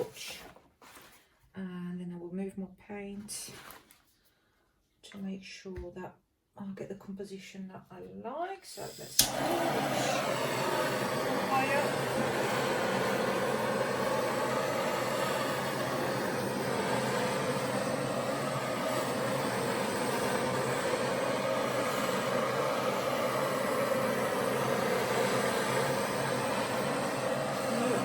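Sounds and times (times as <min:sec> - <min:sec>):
torch flame hissing: 0:08.7 - 0:28.0.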